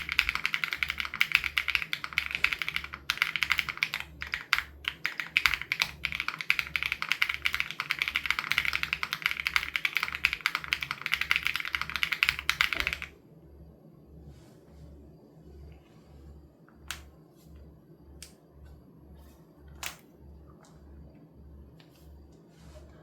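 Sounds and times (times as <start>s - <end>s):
mechanical keyboard typing: 0.0s - 13.1s.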